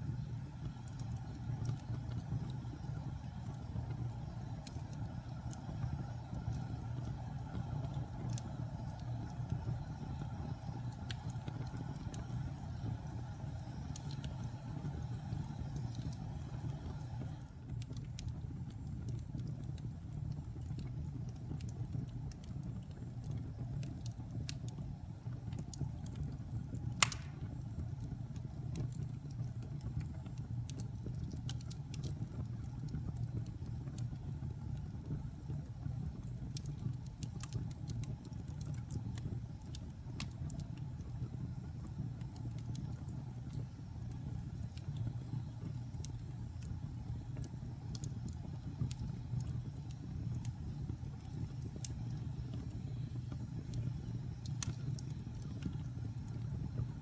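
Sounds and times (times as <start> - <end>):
wood fire crackling: 0.0 - 57.0
loud fire pop: 27.0 - 27.5.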